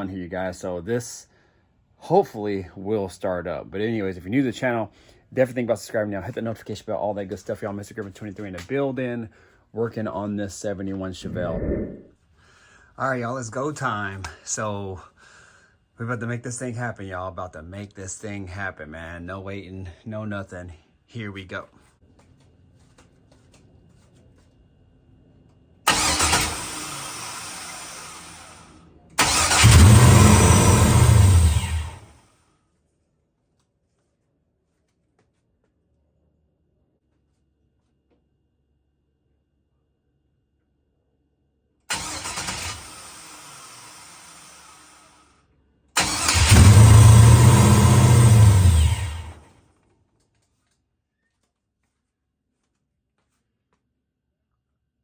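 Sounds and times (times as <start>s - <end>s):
car engine firing and running: 25.9s - 28.6s, 29.2s - 32.0s, 46.0s - 49.4s.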